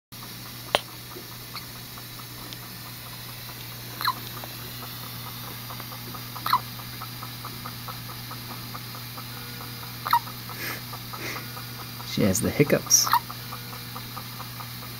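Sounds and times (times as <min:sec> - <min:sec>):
steady low hum: 0:00.2 - 0:14.9
newborn hiccuping: 0:04.0 - 0:04.2, 0:06.4 - 0:06.7, 0:10.0 - 0:10.3, 0:13.1 - 0:13.3.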